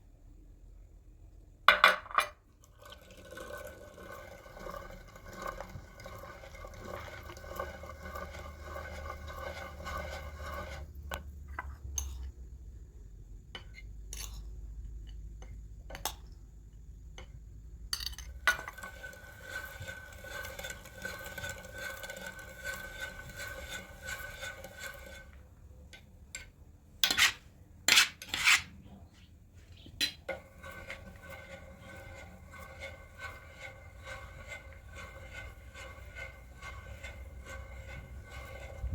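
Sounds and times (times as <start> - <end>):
dishes clattering: 30.0 - 32.0.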